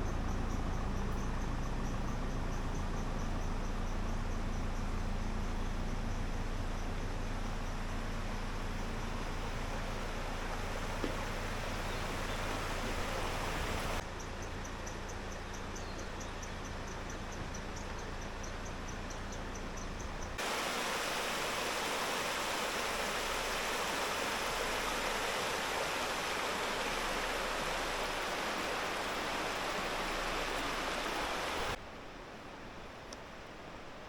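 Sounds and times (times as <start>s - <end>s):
stream rapids rushing: 9.8s - 14.0s, 20.4s - 31.8s.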